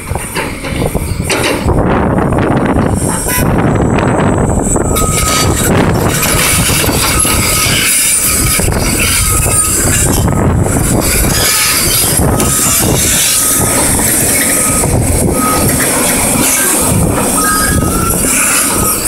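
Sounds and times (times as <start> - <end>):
excavator running: 0.0 - 19.0
warning alarm beeps: 4.2 - 19.0.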